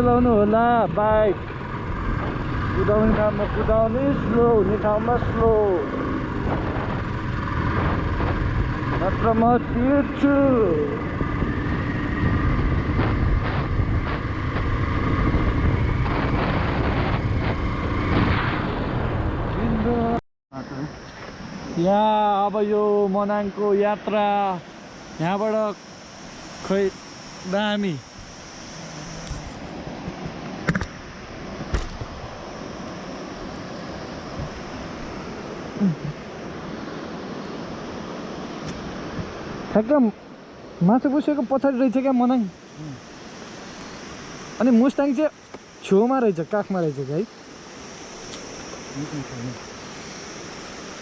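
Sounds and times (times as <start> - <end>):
motorcycle engine running: 0.0 - 20.0
wind rushing: 0.0 - 20.2
motorcycle engine and road rumble: 0.0 - 51.0.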